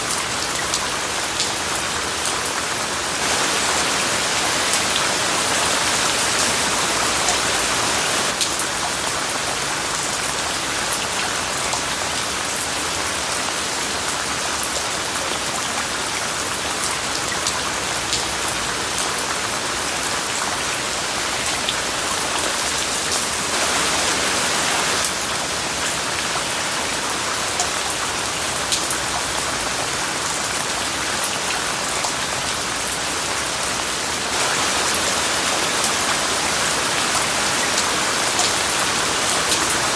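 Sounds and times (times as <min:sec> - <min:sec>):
steady rain: 0:00.0 - 0:39.9
white noise hiss: 0:22.4 - 0:25.2, 0:34.2 - 0:39.9.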